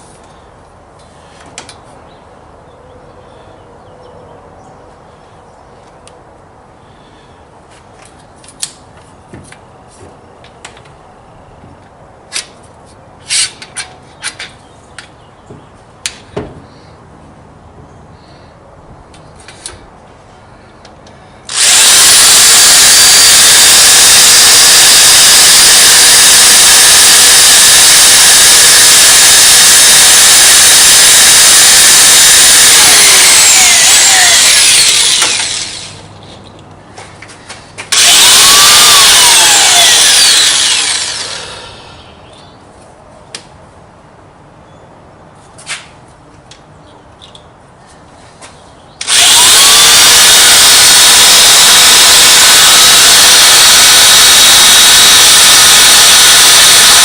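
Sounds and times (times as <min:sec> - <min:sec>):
electric drill running: 0:21.5 - 0:36.0, 0:37.9 - 0:41.8, 0:49.0 - 0:57.0.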